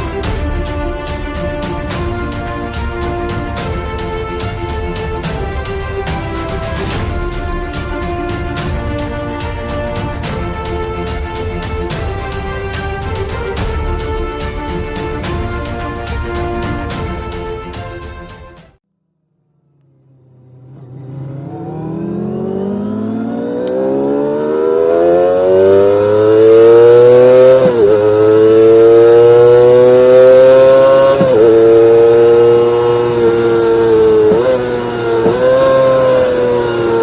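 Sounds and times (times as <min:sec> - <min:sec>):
motorcycle engine high revs wail: 0:19.9 - 0:37.0.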